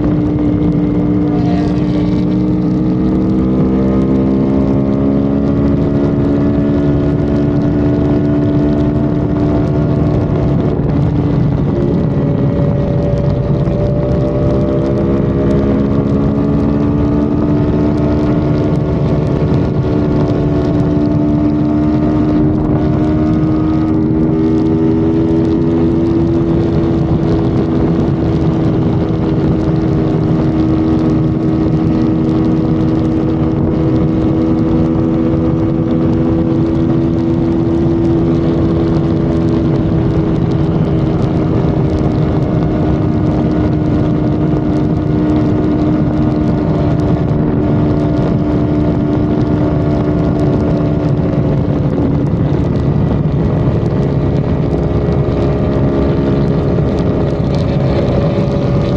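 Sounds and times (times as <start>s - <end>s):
car engine droning: 0.0s - 58.9s
tyre and wind noise: 0.0s - 58.9s.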